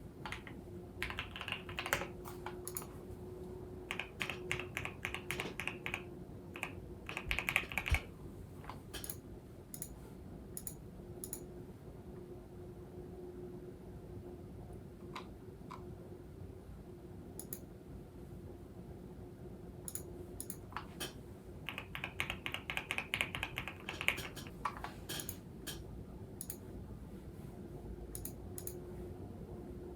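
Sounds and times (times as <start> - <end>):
mechanical keyboard typing: 0.2 - 2.9, 3.9 - 8.1, 8.7 - 9.2, 10.6 - 11.5, 19.9 - 25.8, 28.2 - 28.8.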